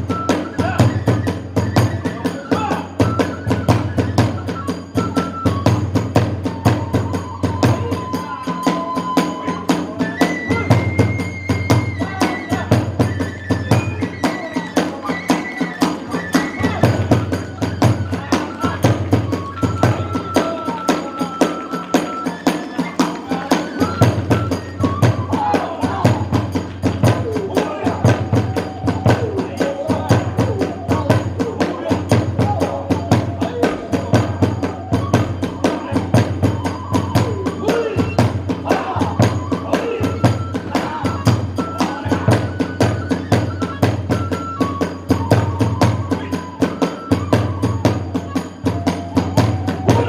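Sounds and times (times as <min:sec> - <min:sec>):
bamboo flute: 0:00.0 - 0:50.0
large drum beating: 0:16.6 - 0:44.2.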